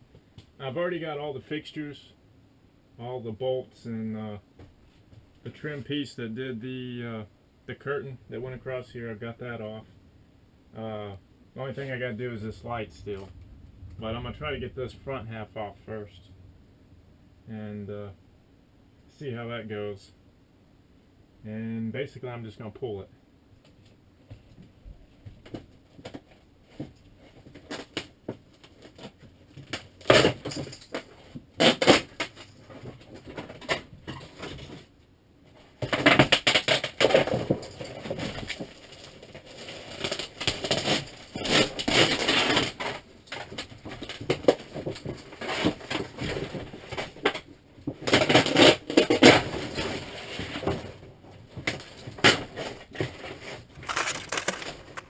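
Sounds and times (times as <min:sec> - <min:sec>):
paperboard panel tearing and cracking: 0:53.8 - 0:55.0.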